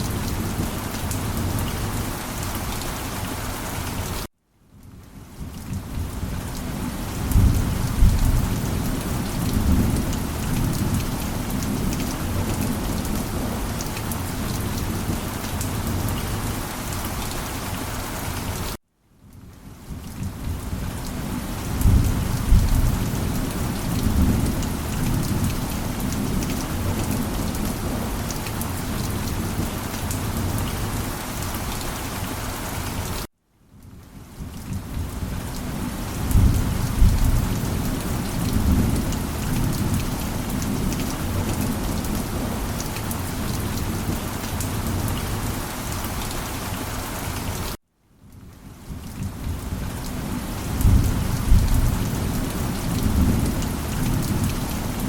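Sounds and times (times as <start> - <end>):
heavy rain: 0.0 - 55.0
low rolling thunder rumbles: 5.4 - 16.5, 20.2 - 31.0, 34.5 - 45.3, 50.6 - 55.0.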